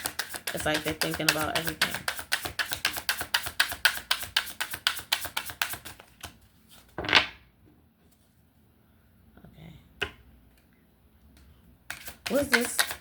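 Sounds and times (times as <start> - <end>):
cards being shuffled: 11.9 - 13.0.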